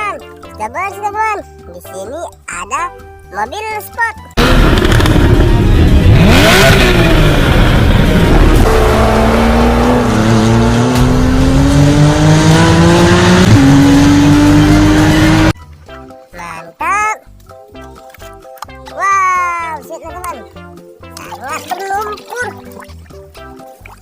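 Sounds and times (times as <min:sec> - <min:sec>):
sports car engine revving: 0:04.4 - 0:15.6.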